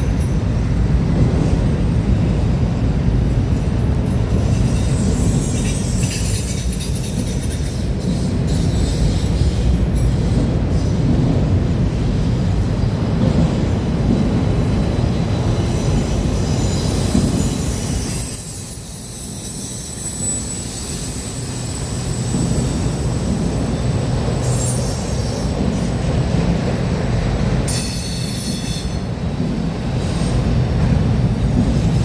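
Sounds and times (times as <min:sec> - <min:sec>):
freight train rumbling past: 0:00.0 - 0:32.0
high wheel squeal: 0:03.3 - 0:11.0, 0:15.0 - 0:29.2.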